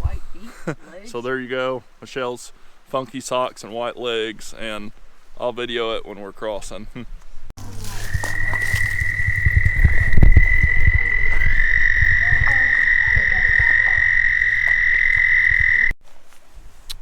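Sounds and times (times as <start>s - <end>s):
toads trilling: 7.6s - 16.0s
low knocks and thumps: 8.1s - 15.8s.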